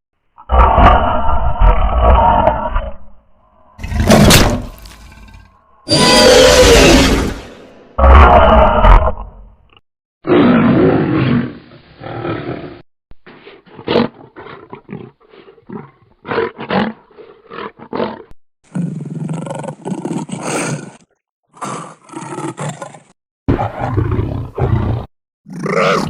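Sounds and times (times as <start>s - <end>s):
creature roaring: 0.4s - 9.5s, 10.3s - 12.8s, 21.6s - 26.0s
creature snarls and growls: 0.4s - 9.6s, 10.2s - 26.0s.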